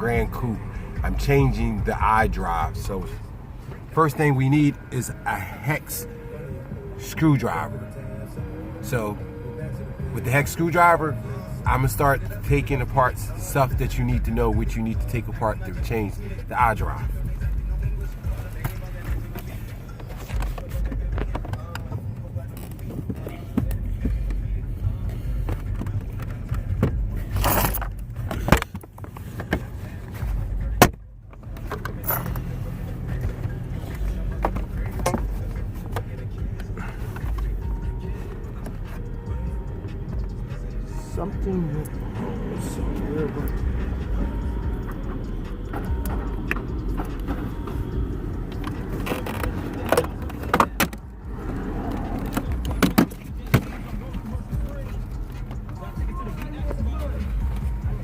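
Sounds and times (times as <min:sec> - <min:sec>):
steady low rumble: 0:00.0 - 0:05.9, 0:09.7 - 0:28.6, 0:29.6 - 0:58.0
tools and parts clicking and rattling: 0:25.4 - 0:29.7, 0:31.3 - 0:32.5, 0:33.8 - 0:37.4, 0:48.5 - 0:51.1.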